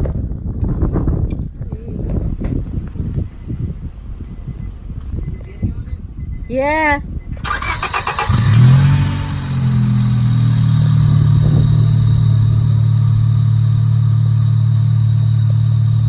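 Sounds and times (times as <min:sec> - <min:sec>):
car engine idling: 0:07.4 - 0:16.0.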